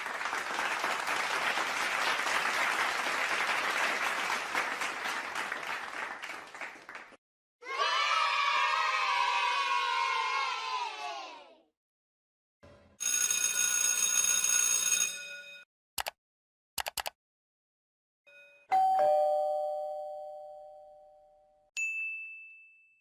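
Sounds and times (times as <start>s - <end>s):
sharp clicks: 16.8s - 17.2s
two-note doorbell chime: 18.3s - 23.0s.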